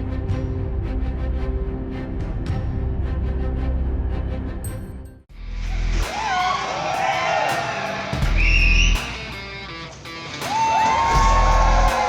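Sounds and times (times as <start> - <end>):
electric guitar music: 8.0 - 11.8.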